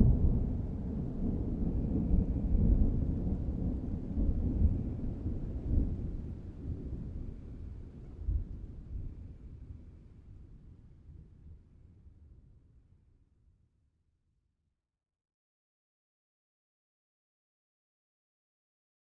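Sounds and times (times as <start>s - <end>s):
thunder rumbling: 0.0s - 7.2s.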